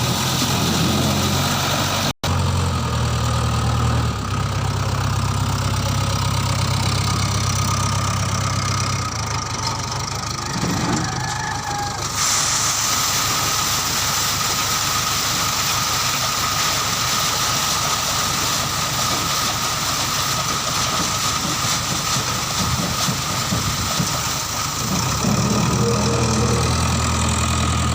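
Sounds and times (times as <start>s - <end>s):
diesel engine running: 0.0s - 27.9s
high whine: 24.8s - 27.3s.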